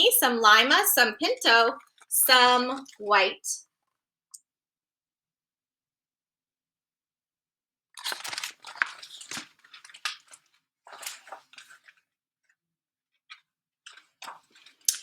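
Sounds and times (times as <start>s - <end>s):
paper page rustling: 8.0s - 12.1s, 13.3s - 14.9s.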